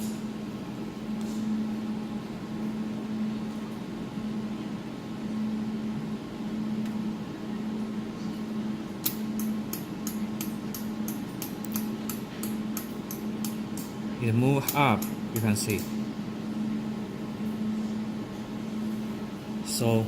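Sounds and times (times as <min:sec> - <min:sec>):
laser welding machine humming: 0:00.0 - 0:20.0.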